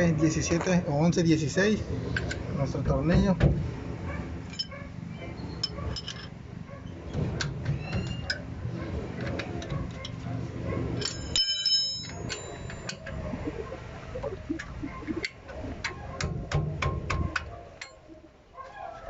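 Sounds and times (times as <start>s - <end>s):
wrench clinking on metal: 4.5s - 4.8s, 5.6s - 6.4s, 11.0s - 13.1s
steel ringing clang: 11.0s - 12.9s.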